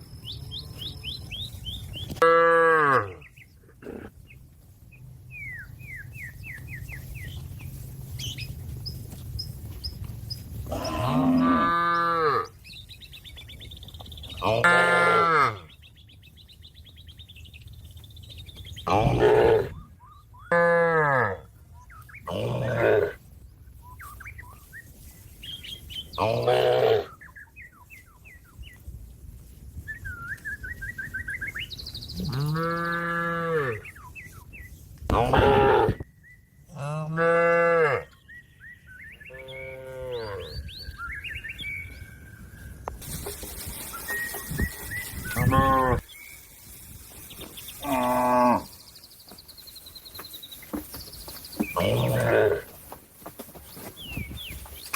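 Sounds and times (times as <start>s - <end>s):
small birds chirping: 0.0s - 2.2s, 3.1s - 14.6s, 15.6s - 19.1s, 23.4s - 29.1s, 29.8s - 34.9s, 38.1s - 54.9s
cow mooing: 2.2s - 3.2s, 10.7s - 12.5s, 36.8s - 38.1s, 45.4s - 46.0s, 47.8s - 48.8s
cow lowing: 2.2s - 4.3s, 10.6s - 12.5s, 44.0s - 46.0s.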